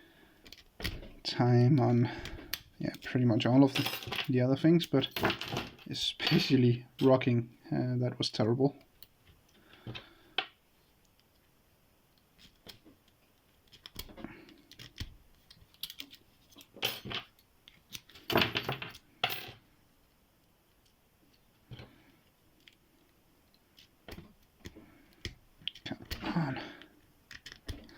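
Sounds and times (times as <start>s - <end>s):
padlocks clattering: 14.7s - 19.5s.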